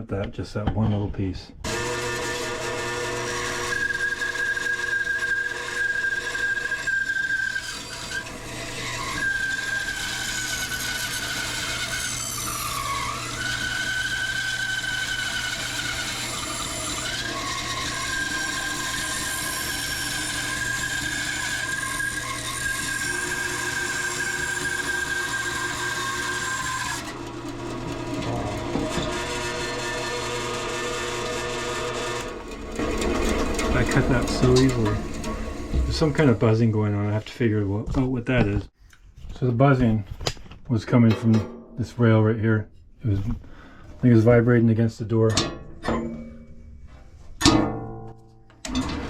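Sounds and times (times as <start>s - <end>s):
bandsaw cutting wood: 1.6s - 37.1s
loose rail buzzing: 1.7s - 36.8s.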